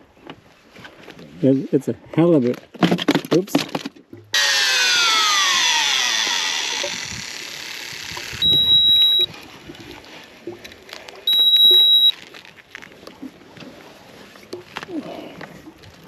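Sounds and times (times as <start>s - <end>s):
loud falling whine: 4.4s - 9.3s
high-pitched electronic beeps: 8.4s - 9.3s, 11.3s - 12.1s.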